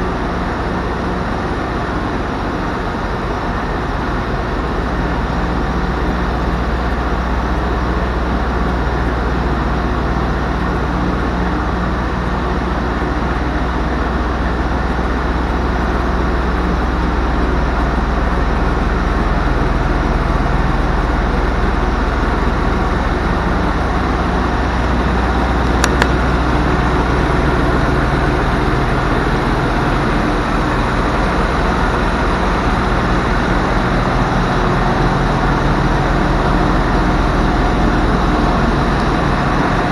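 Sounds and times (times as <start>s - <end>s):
diesel engine idling: 0.0s - 39.9s
sharp click: 25.8s - 26.2s.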